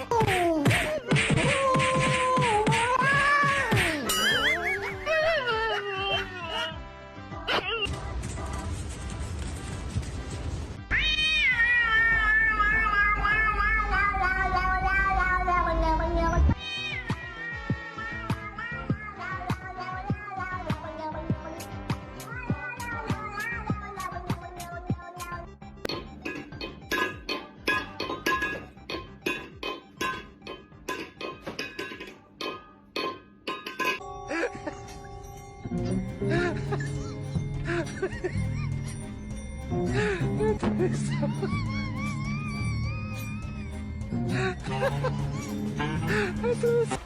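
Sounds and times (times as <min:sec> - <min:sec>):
cat meowing: 0:10.9 - 0:15.6, 0:16.6 - 0:19.3
struck ringing notes music: 0:25.7 - 0:46.7.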